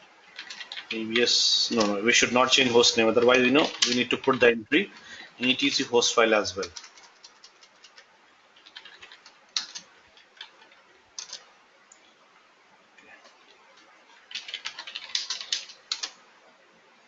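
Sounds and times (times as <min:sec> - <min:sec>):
computer keyboard typing: 0:00.3 - 0:04.4, 0:06.6 - 0:11.4, 0:14.2 - 0:16.2.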